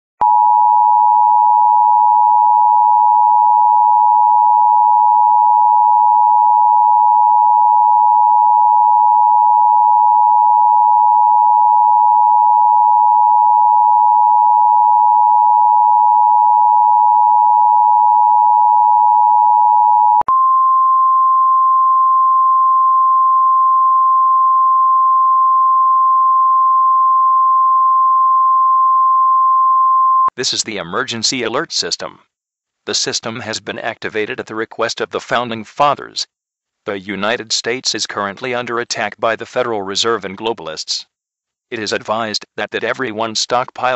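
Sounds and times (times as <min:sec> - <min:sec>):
single steady tone: 0:00.2 - 0:30.3.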